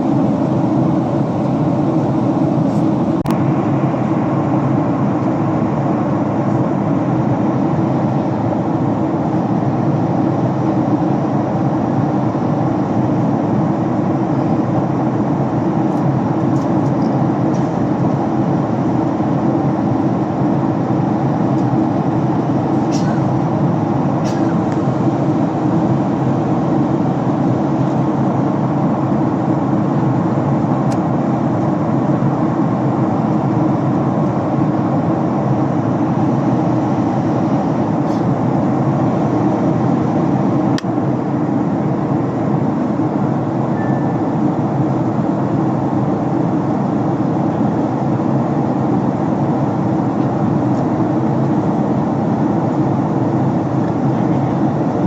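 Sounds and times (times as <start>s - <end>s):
airplane cabin rumble: 0.0s - 55.0s.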